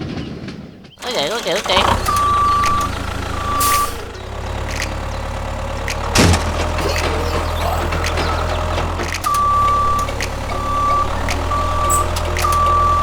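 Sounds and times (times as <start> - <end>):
low engine hum: 1.0 - 13.0
reversing alarm beeping: 1.0 - 13.0
sudden clunk: 5.8 - 13.0.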